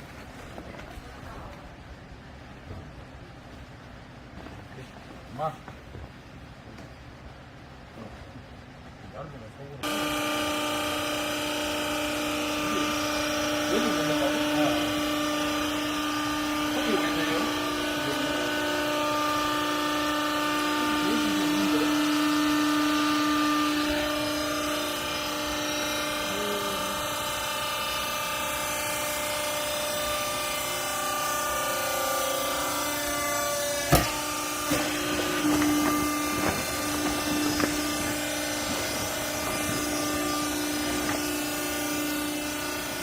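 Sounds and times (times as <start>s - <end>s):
baler machine humming: 9.7s - 43.0s
sharp knocks: 33.8s - 41.4s.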